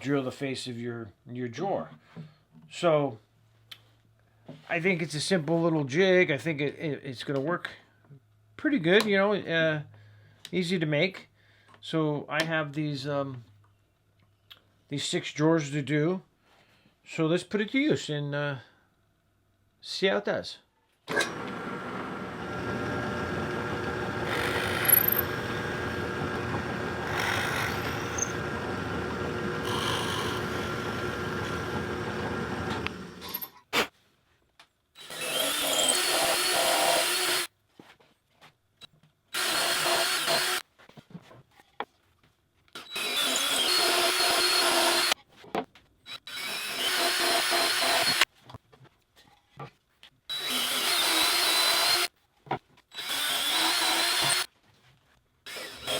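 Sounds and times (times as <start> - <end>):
power drill boring into wood: 21.1 - 33.5, 35.0 - 37.5, 39.3 - 40.6, 42.8 - 45.2, 46.1 - 48.3, 50.3 - 52.1, 52.9 - 54.5, 55.5 - 55.9.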